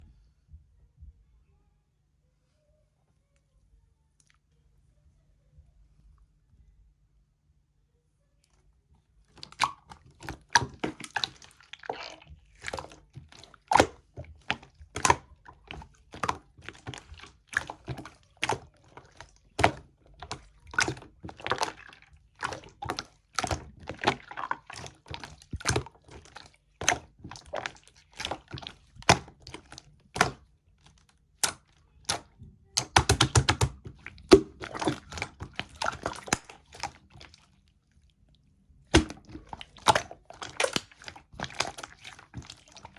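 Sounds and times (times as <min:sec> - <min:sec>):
slime squished by hand: 0:09.3 - 0:42.9.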